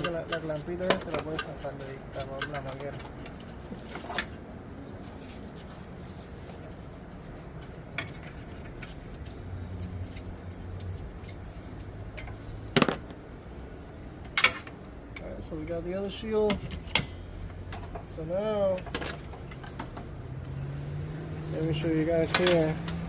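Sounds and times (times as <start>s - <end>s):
hand tools clinking on metal: 0.0s - 3.5s, 22.2s - 23.0s.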